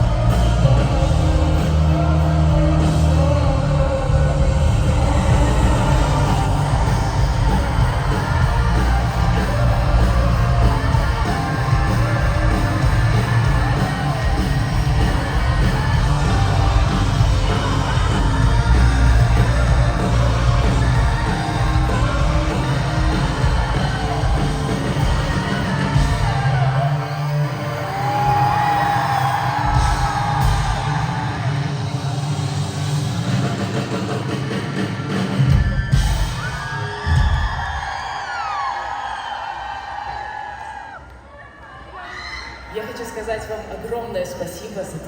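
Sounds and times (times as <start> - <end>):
person singing: 0.0 - 31.6
live rock band playing: 0.0 - 37.4
crowd shouting: 0.0 - 42.8.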